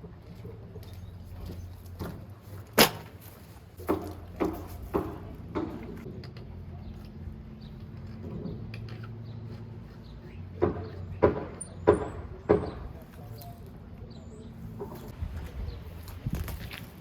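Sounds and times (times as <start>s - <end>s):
hollow knocks: 3.8s - 6.1s, 10.5s - 13.0s.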